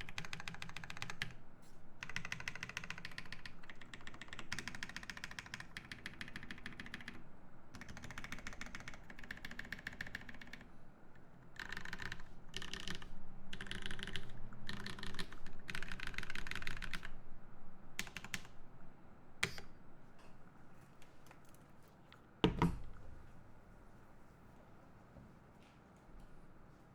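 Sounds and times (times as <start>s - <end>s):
mechanical keyboard typing: 0.0s - 1.4s, 2.0s - 7.2s, 7.8s - 10.7s, 11.5s - 17.2s, 18.0s - 18.6s, 19.4s - 19.7s.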